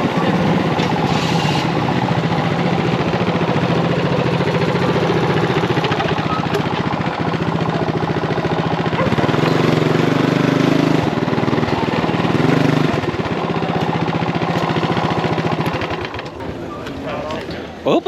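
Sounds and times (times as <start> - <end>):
minibike engine putter: 0.2 - 9.9, 13.0 - 17.7.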